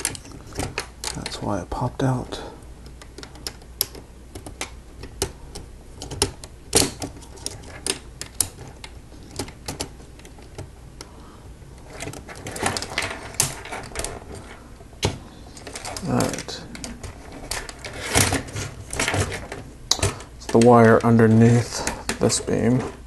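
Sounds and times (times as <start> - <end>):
plastic pieces clicking and clattering: 11.9 - 14.6, 15.6 - 23.0.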